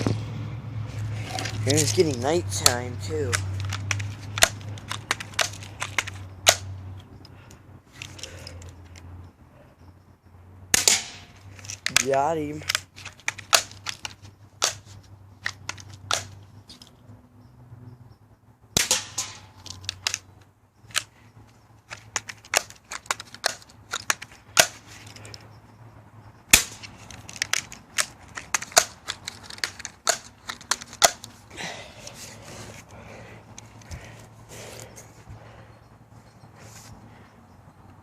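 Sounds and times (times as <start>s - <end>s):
bb gun firing: 10.7s - 11.3s, 18.8s - 19.5s, 26.5s - 26.8s.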